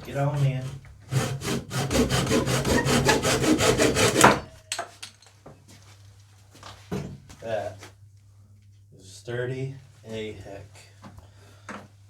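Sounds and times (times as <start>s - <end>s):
hand saw cutting wood: 0.1s - 4.6s.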